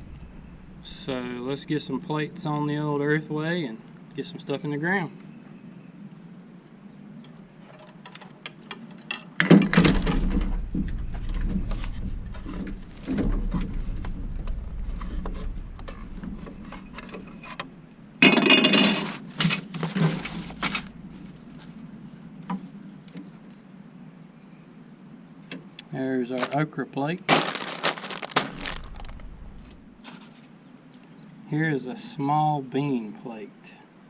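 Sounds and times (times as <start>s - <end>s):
low handling rumble: 0.0s - 4.5s, 9.5s - 18.2s, 19.2s - 22.4s, 27.5s - 30.0s
plastic seed plates rattling: 26.4s - 26.6s, 27.3s - 29.8s.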